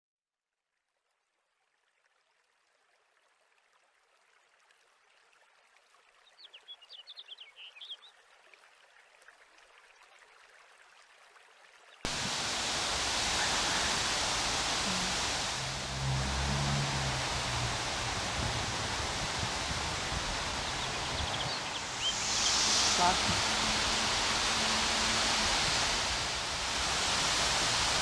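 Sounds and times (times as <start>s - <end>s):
wind gust on microphone: 12.1s - 28.0s
wind rustling foliage: 12.1s - 28.0s
bird chirping: 19.1s - 26.6s.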